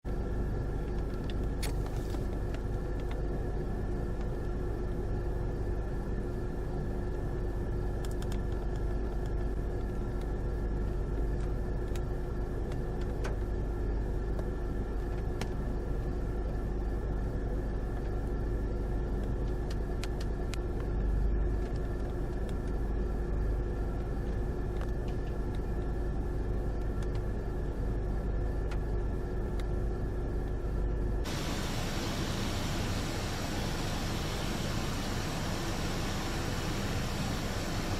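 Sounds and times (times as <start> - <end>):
car road and engine noise: 31.2 - 37.9.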